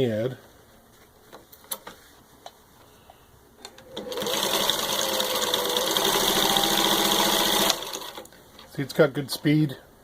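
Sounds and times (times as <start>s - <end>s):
sewing machine running: 3.9s - 8.2s.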